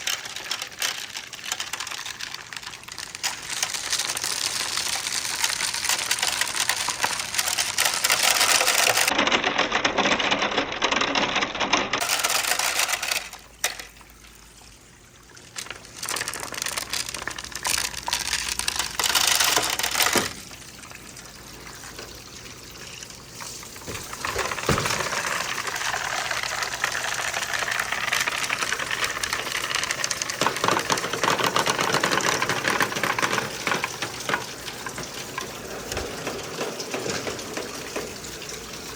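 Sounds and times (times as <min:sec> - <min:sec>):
water running: 0:00.0 - 0:09.1, 0:12.0 - 0:38.9
marbles clattering on wooden track: 0:00.0 - 0:14.1, 0:15.4 - 0:20.6, 0:23.3 - 0:38.9.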